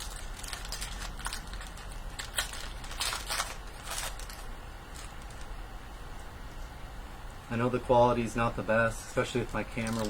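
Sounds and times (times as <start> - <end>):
wrappers crinkling and tearing: 0.0 - 5.6, 9.1 - 10.0
cards shuffled in hand: 9.5 - 10.0.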